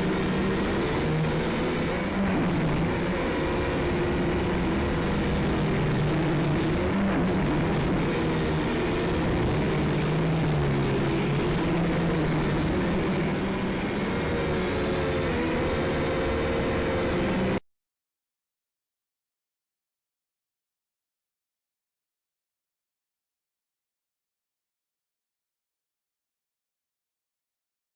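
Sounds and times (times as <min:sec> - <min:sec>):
drone propellers whirring: 0:00.0 - 0:17.6.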